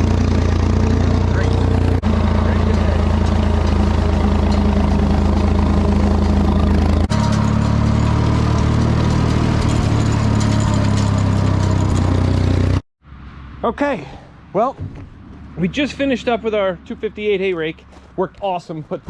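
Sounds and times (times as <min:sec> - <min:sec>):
tractor engine running: 0:00.0 - 0:12.8.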